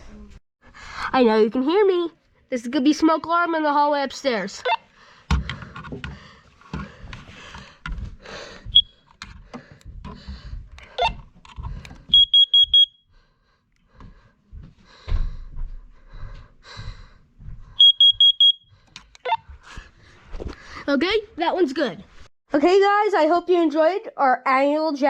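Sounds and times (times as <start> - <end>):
smoke alarm beeps: 8.7 - 9.0, 12.1 - 13.1, 17.8 - 19.4.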